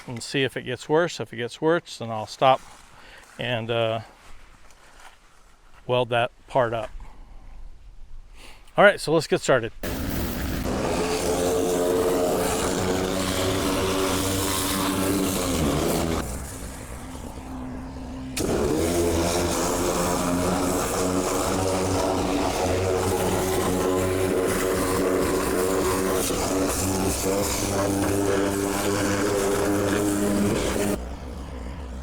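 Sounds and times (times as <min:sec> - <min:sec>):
water spray hissing: 0:09.8 - 0:31.0
pressure washer engine humming: 0:09.8 - 0:32.0.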